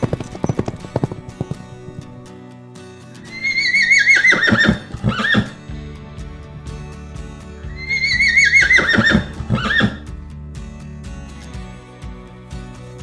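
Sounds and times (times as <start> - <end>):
background music: 0.0 - 13.0
horse neighing: 3.3 - 5.6, 7.8 - 10.0.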